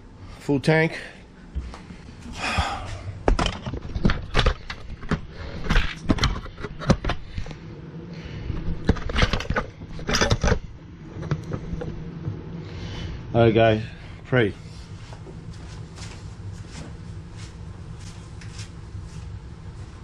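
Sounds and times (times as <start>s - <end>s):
faint low hum: 0.0s - 20.0s
tools and parts rattling: 8.8s - 10.7s.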